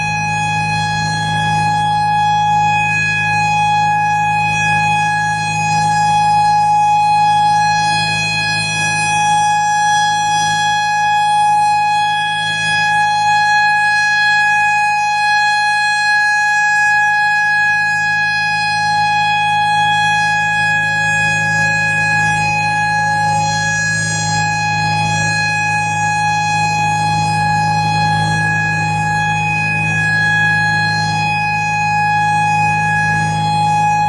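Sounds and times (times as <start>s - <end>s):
civil defense siren steady tone: 0.0s - 34.0s.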